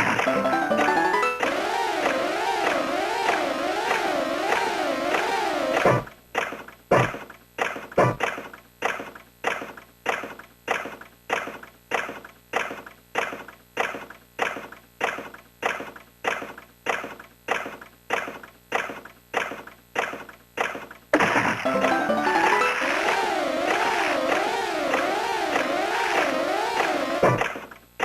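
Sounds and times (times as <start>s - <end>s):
pachinko machine clacking: 0.0s - 6.1s, 21.6s - 27.5s
electronic jingle: 0.3s - 6.1s, 21.7s - 27.4s.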